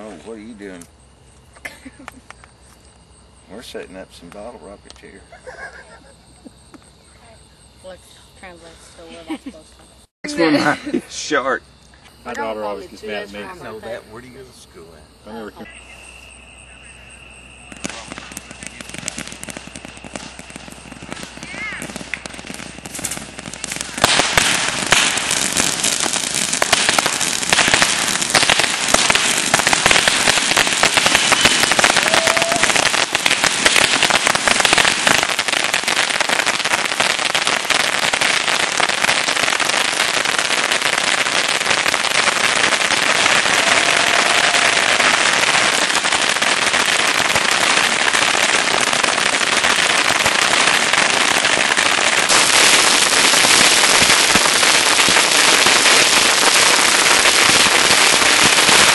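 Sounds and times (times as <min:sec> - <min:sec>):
rocket whistle: 0:15.6 - 0:23.0, 0:31.2 - 0:33.1
bottle rockets crackling hiss: 0:15.6 - 0:58.9.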